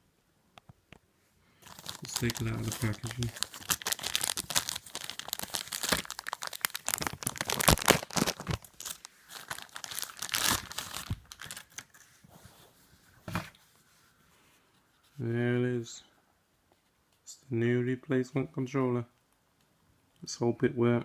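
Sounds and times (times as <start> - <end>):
packaging crinkling and tearing: 1.6 - 12.0.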